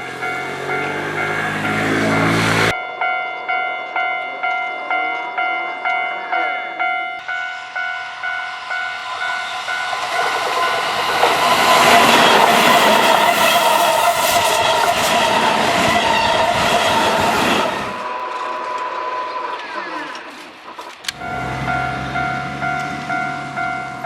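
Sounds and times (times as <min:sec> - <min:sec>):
train wheels on rails: 0:00.0 - 0:02.7, 0:07.2 - 0:24.0
level crossing bell ringing: 0:00.0 - 0:10.9, 0:21.1 - 0:24.0.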